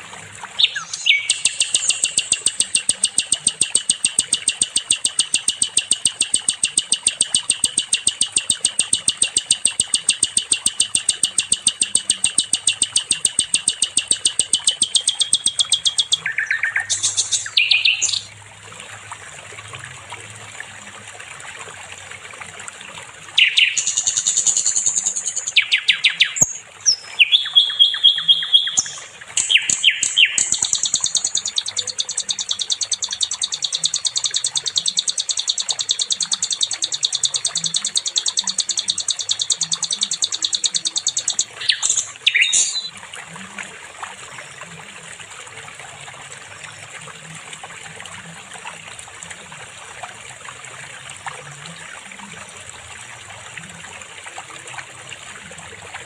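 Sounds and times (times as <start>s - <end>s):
songbird trilling and chirping: 0.6s - 18.3s, 23.4s - 42.9s.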